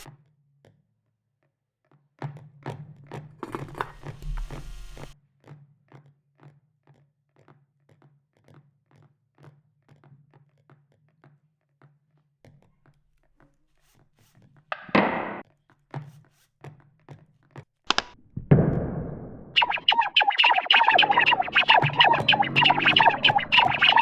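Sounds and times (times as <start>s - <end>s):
loud noisy burst: 19.6s - 24.0s
low hum: 19.6s - 24.0s.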